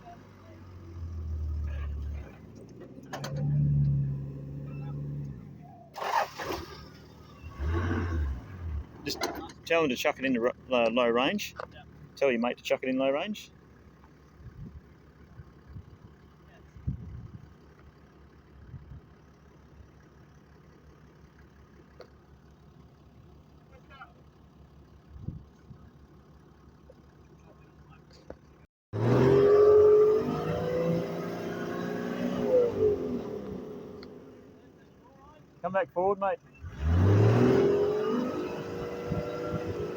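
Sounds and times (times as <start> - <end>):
vehicle engine idling: 0.0 - 7.7, 8.3 - 28.7, 33.2 - 36.7
engine revving: 0.0 - 9.3, 28.9 - 34.6, 36.6 - 39.9.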